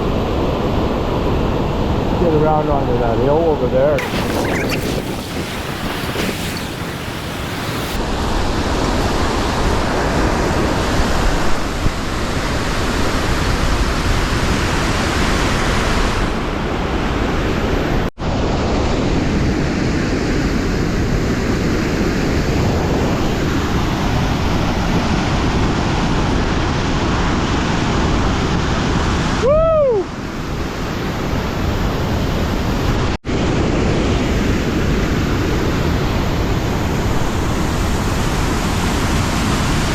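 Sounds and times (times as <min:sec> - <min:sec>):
short pitched call: 0:04.0 - 0:07.8.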